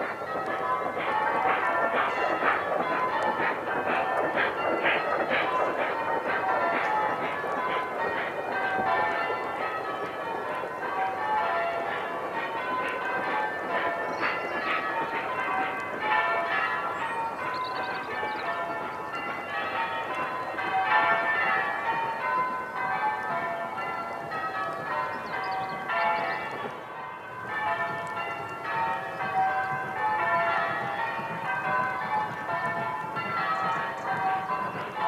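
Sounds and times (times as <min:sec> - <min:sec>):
church bells ringing: 0:00.0 - 0:35.0.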